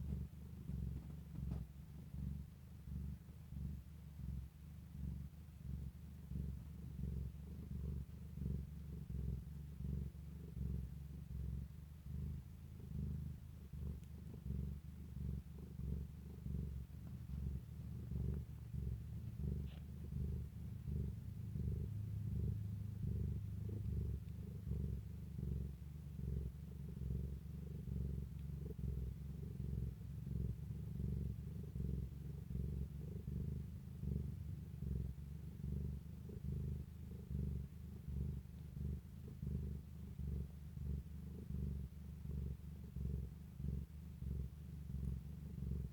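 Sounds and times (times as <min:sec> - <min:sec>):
cat purring: 0:00.0 - 0:45.9
faint tick: 0:13.9 - 0:14.4, 0:23.8 - 0:24.4, 0:28.3 - 0:28.6.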